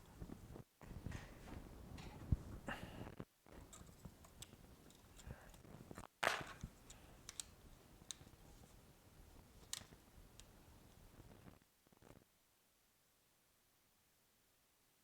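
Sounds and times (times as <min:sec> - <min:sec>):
small tools clicking and tapping: 0:03.6 - 0:08.3.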